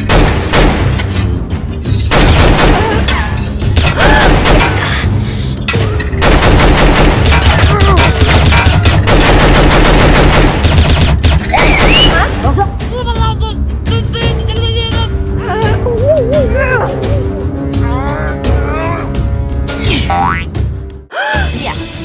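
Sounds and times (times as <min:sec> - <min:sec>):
rapid gunfire bursts: 0:02.1 - 0:03.0, 0:06.2 - 0:12.2
background music with bass: 0:12.2 - 0:22.0.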